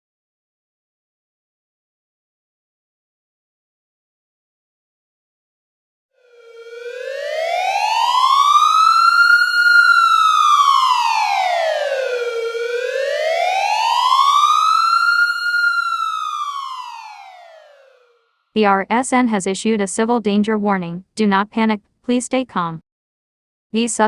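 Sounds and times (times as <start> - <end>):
warning siren wailing: 6.2 - 18.4.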